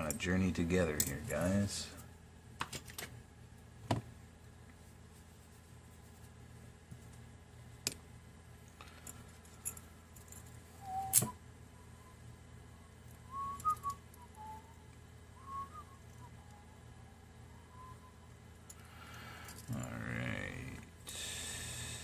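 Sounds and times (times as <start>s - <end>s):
person whistling softly: 10.8s - 12.4s, 13.2s - 18.3s.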